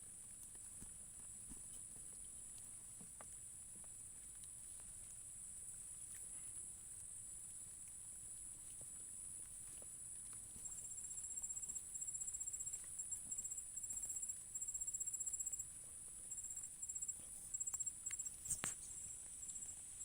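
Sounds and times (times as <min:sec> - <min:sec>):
insects buzzing: 0:10.7 - 0:15.6, 0:16.3 - 0:20.0
faint clicks: 0:16.3 - 0:19.7.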